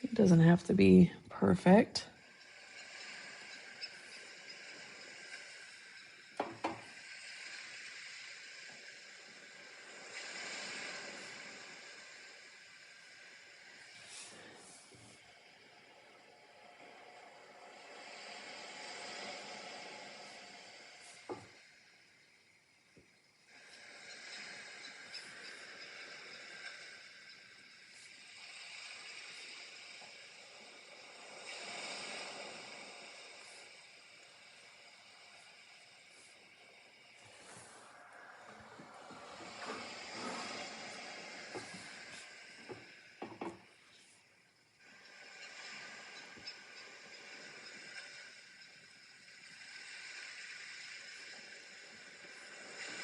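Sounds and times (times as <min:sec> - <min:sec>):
faint steady hiss: 0:00.0 - 0:53.0
brush stroking across paper: 0:13.9 - 0:15.2, 0:37.2 - 0:42.6.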